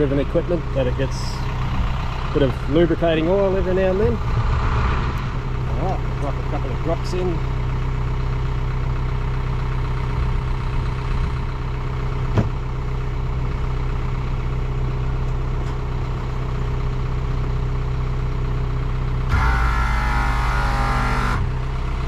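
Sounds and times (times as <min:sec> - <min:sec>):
motor idling: 0:00.0 - 0:22.0.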